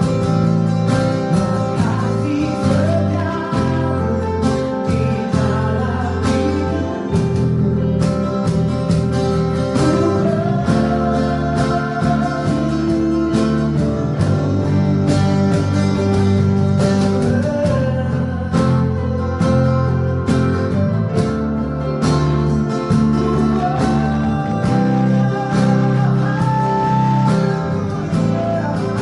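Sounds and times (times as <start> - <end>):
worship music with guitar: 0.0 - 29.0.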